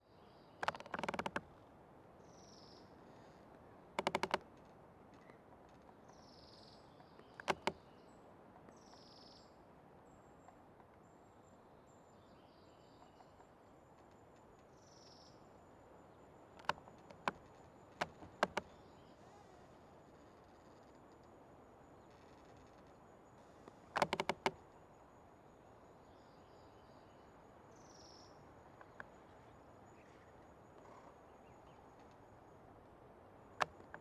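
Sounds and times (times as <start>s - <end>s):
small birds chirping faintly: 0.0s - 34.0s
old tree creaking: 0.6s - 1.7s, 3.0s - 6.1s, 7.2s - 7.9s, 16.4s - 24.8s, 28.6s - 32.5s, 33.5s - 34.0s.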